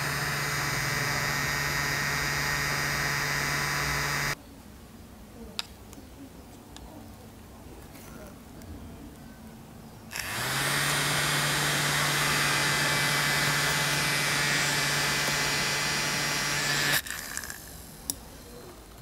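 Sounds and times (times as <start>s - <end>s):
small electric motor whirring: 0.0s - 4.4s, 10.1s - 17.9s.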